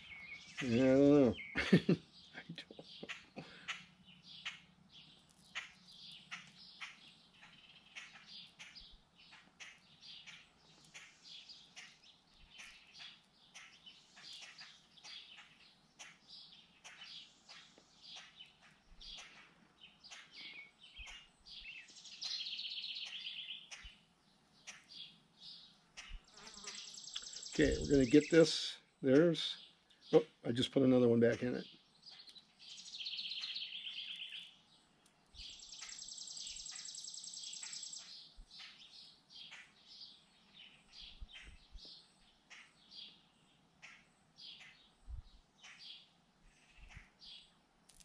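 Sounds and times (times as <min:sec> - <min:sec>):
blackbirds chirping: 0:00.0 - 0:48.0.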